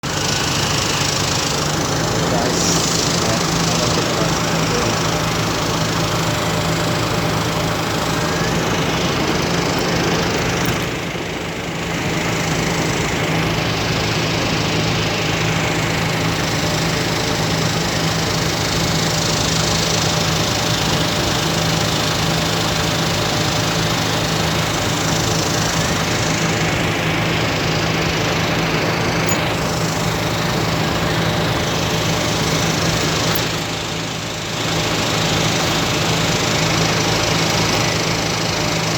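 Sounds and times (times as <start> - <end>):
engine running: 0.0 - 38.9
broad rushing noise: 1.6 - 5.4.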